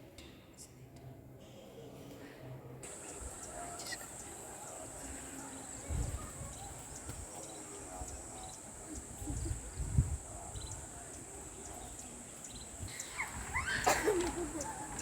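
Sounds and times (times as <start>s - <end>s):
high-pitched insect chorus: 2.9s - 13.9s.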